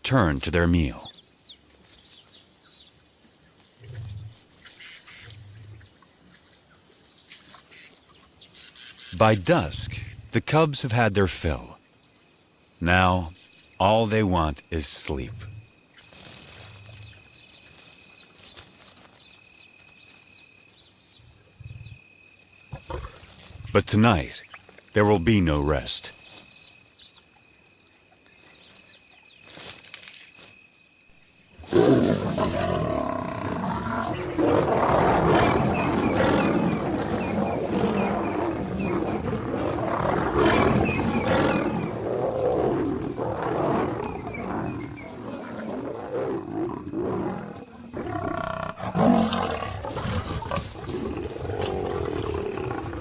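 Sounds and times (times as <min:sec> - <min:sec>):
crickets chirping: 0:00.6 - 0:53.0
lions growling and roaring: 0:03.8 - 0:04.4, 0:22.7 - 0:24.3, 0:31.6 - 0:53.0.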